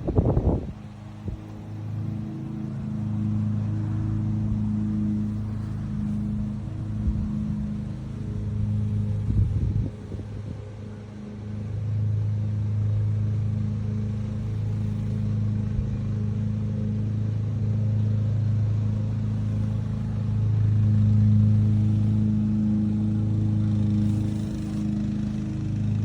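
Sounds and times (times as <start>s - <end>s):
low mechanical hum: 0.0s - 26.0s.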